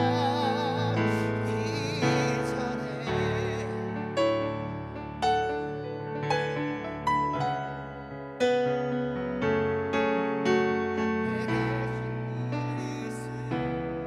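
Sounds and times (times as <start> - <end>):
person singing with vibrato: 0.0 - 4.3, 11.2 - 13.9
piano chords: 0.0 - 14.0.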